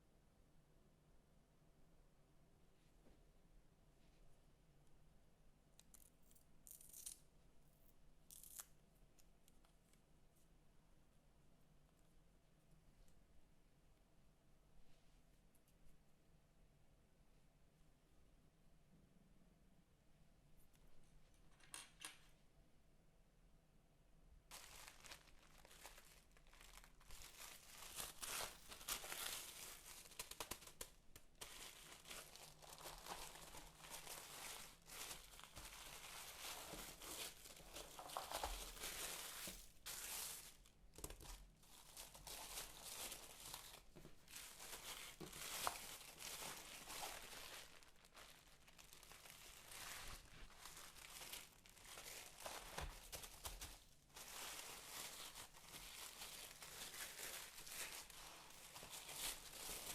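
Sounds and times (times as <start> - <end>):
packaging crinkling and rustling: 24.5 - 59.9
packaging tearing: 41.8 - 59.9.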